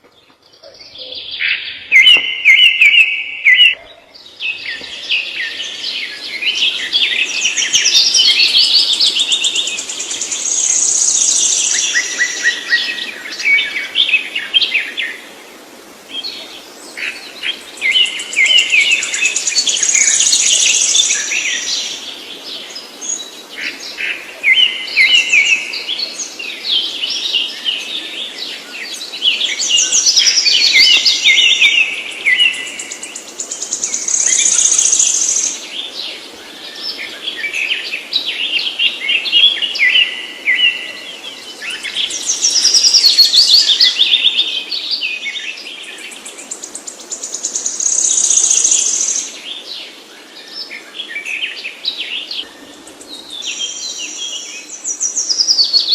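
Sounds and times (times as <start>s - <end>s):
songbird chirps and trills: 0.0s - 55.9s.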